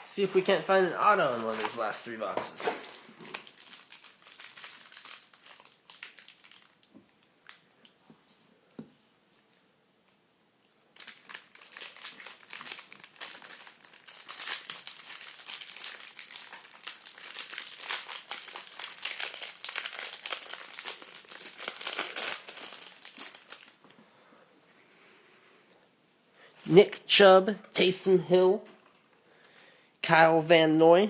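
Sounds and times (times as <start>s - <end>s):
packaging being torn and crinkled: 1.0s - 7.6s, 11.0s - 23.8s.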